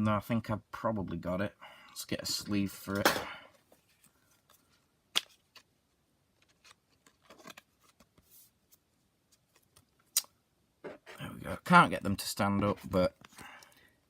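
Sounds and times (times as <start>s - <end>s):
plastic card sleeve rustling: 3.7s - 10.0s.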